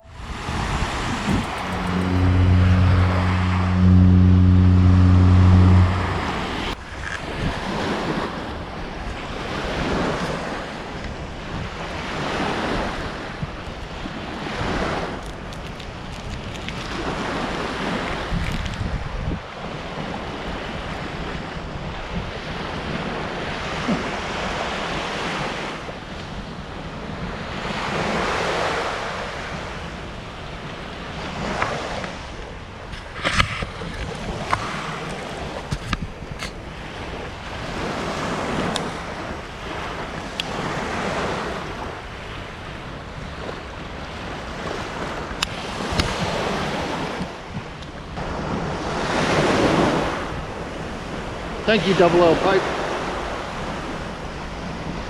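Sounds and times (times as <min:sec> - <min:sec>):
wind buffeting microphone: 0:00.0 - 0:10.2
ocean waves breaking: 0:00.0 - 0:15.2, 0:19.5 - 0:47.4, 0:48.2 - 0:55.0.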